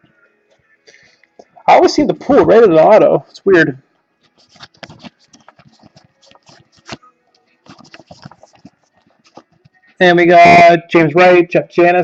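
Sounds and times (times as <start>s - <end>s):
cards flipped through by hand: 4.2s - 9.8s.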